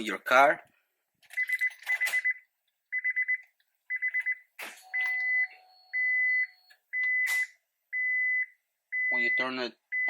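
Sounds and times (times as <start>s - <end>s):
electronic warning chime beeping: 3.0s - 10.0s.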